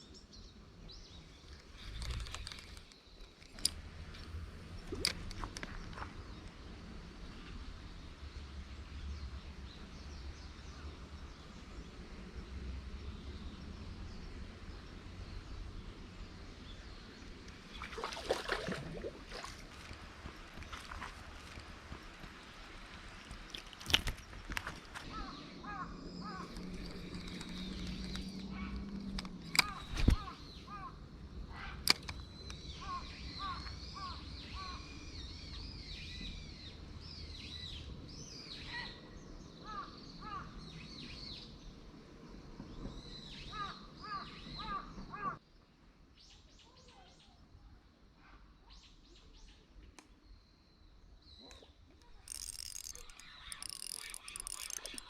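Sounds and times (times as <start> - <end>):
bird calls: 16.7 - 36.5, 51.3 - 55.0
high bird chirping: 51.4 - 55.0.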